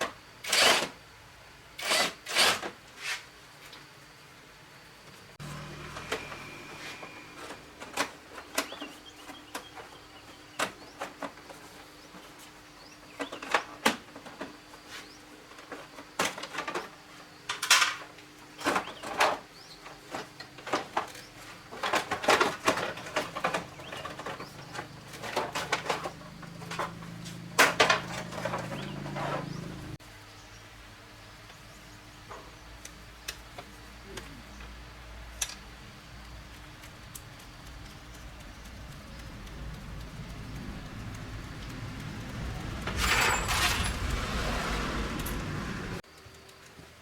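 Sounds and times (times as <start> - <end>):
metal tools clinking and knocking: 42.9 - 44.2.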